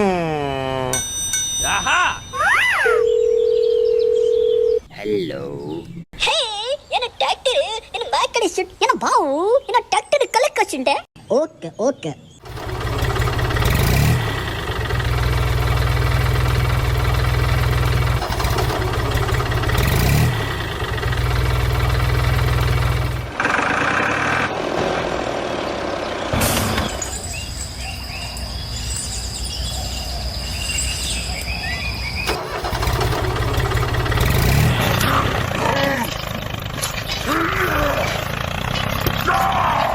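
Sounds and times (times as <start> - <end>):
engine running: 12.4 - 27.4, 32.3 - 39.9.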